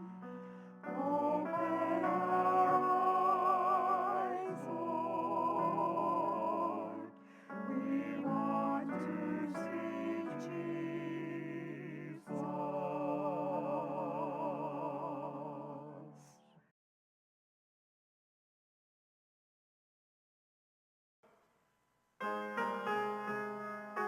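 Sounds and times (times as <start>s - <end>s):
person singing with vibrato: 0.8s - 16.3s.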